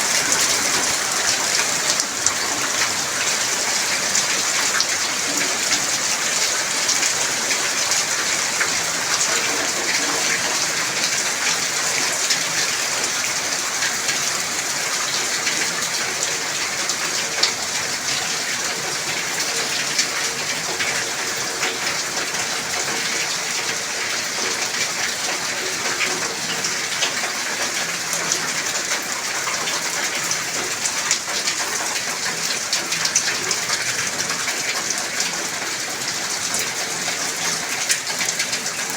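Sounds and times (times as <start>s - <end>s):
heavy rain hissing: 0.0s - 14.8s.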